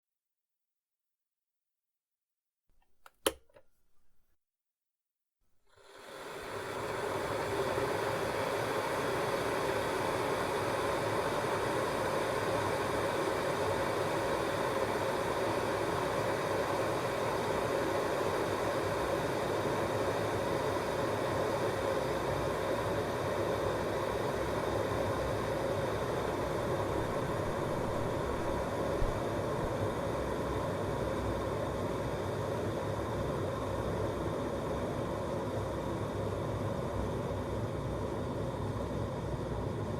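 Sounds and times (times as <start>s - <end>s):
kettle tick: 2.8s - 3.7s
electric kettle heating water: 2.8s - 4.2s, 5.7s - 39.9s.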